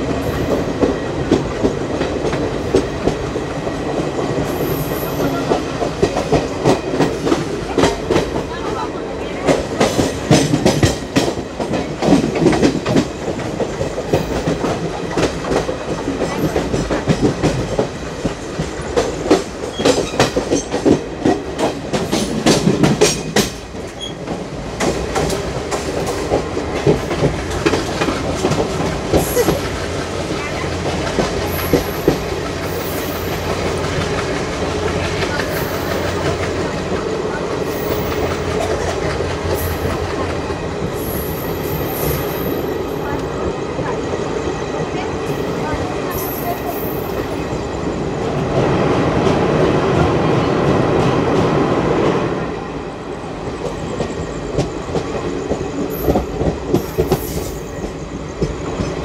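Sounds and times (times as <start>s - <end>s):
train wheels clattering over rail joints: 9.4s - 47.6s, 53.6s - 59.0s.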